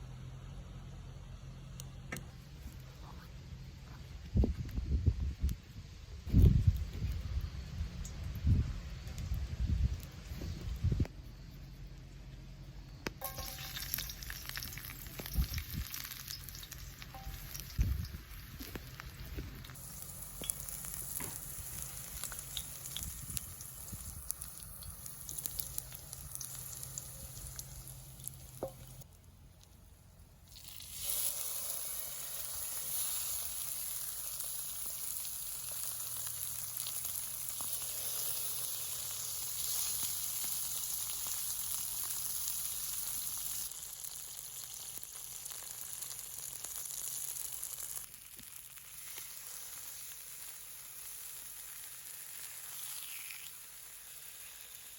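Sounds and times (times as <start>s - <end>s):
food frying in oil: 13.2s - 29.1s, 30.5s - 54.9s.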